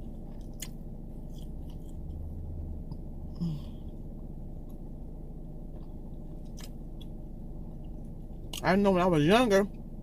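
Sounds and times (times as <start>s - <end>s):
car engine and road noise: 0.0s - 10.0s
person sighing or murmuring: 3.3s - 3.9s.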